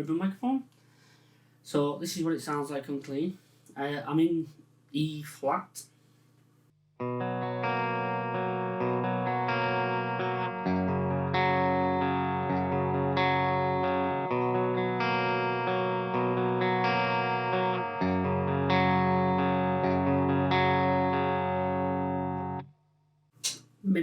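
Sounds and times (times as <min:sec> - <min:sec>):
clean electric guitar chords: 0:07.0 - 0:22.6.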